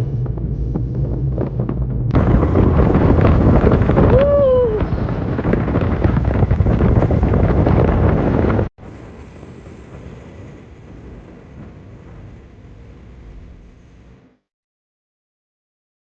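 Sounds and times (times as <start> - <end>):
wind buffeting microphone: 0.0 - 14.2
short pitched whine: 8.8 - 14.5.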